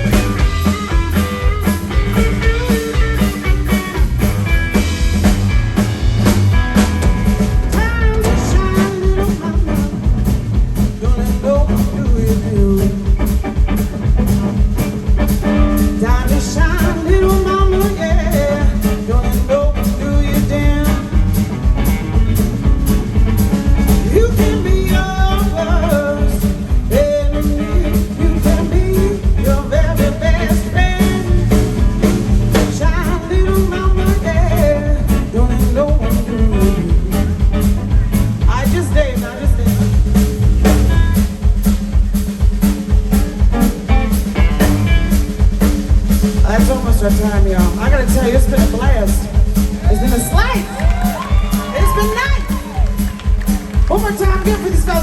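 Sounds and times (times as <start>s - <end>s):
sliding lead melody: 0.0s - 10.9s
drum kit and bass: 0.0s - 55.0s.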